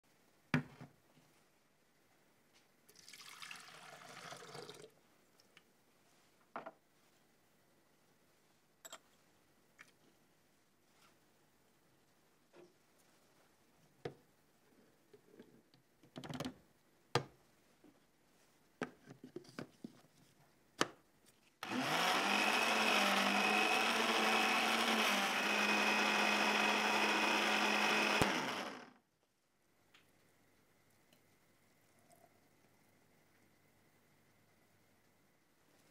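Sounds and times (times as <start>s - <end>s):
blender running: 21.6s - 29.0s.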